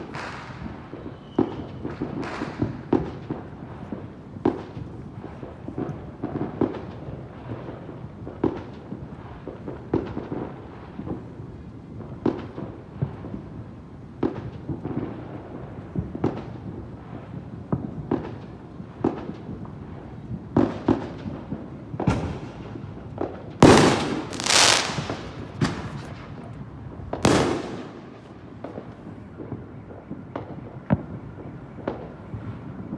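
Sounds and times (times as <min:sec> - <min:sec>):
fireworks bangs: 0:20.6 - 0:29.6.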